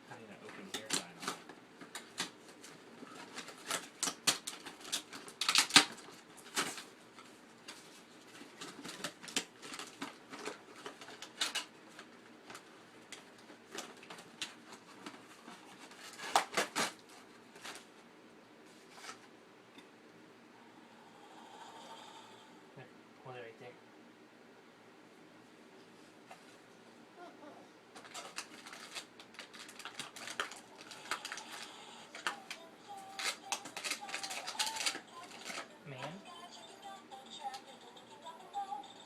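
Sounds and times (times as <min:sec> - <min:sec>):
packaging clicking and crackling: 0:00.4 - 0:17.0, 0:28.0 - 0:35.8.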